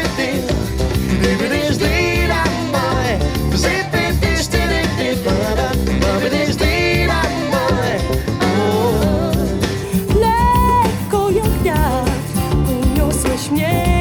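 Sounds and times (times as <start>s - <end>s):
pop song through speaker: 0.0s - 14.0s.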